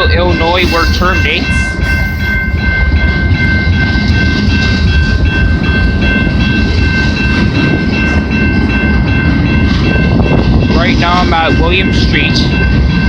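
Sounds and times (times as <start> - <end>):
high-pitched ringing tone: 0.0 - 10.1
train wheels rumbling on rails: 0.0 - 13.0.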